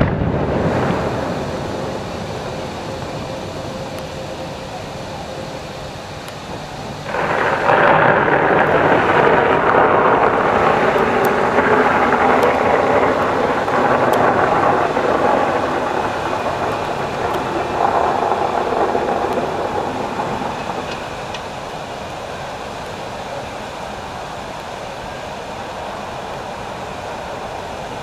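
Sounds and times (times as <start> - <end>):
fireworks bursts and crackling: 0.0 - 23.5
sharp firework cracks: 6.2 - 21.7.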